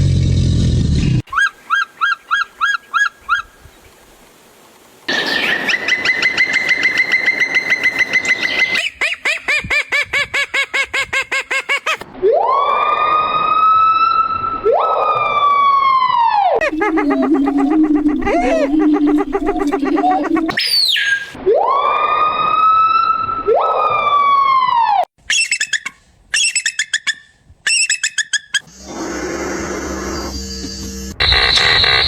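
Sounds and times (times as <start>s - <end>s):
car alarm siren tones: 16.6s - 20.6s, 29.8s - 32.0s.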